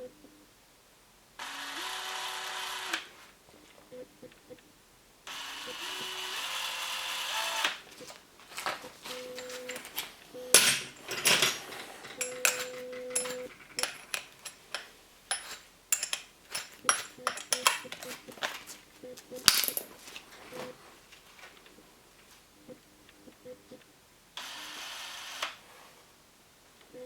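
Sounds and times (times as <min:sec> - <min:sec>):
cordless drill running: 0:01.4 - 0:03.1, 0:05.3 - 0:07.8, 0:24.4 - 0:25.6
clicks and knocks: 0:08.6 - 0:18.6.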